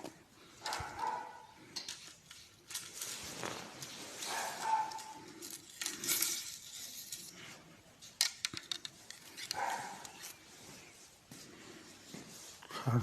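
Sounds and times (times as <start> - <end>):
rustling of wrapping: 0.0 - 13.0
light clicks and clinks: 3.8 - 10.4.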